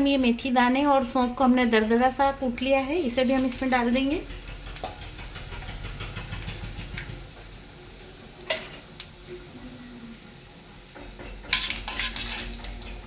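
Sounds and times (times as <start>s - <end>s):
seeds spluttering in hot oil: 2.9s - 13.0s.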